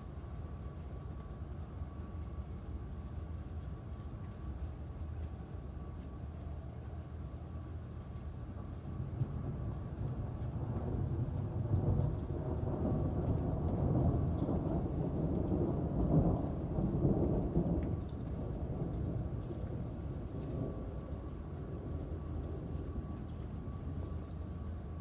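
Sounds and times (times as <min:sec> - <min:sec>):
rain: 0:00.0 - 0:25.0
rolling thunder: 0:08.9 - 0:24.0.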